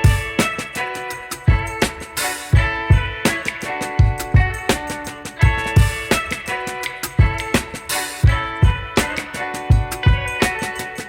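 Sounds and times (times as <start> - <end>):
guitar-led instrumental music: 0.0 - 11.0
kick drum beat: 1.5 - 1.8, 2.5 - 3.3, 4.0 - 6.3, 7.1 - 10.6.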